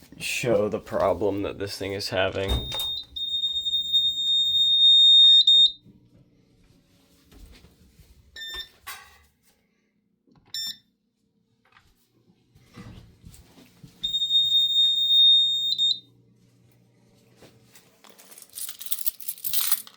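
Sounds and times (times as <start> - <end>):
fire alarm high-pitched tone: 2.5 - 5.8, 14.0 - 16.1
fire alarm short chirps: 2.5 - 5.8, 14.0 - 16.0.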